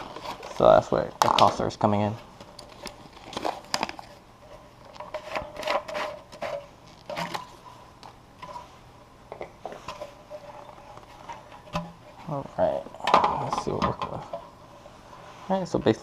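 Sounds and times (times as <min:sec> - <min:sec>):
rubbing and scraping: 0:04.9 - 0:07.8.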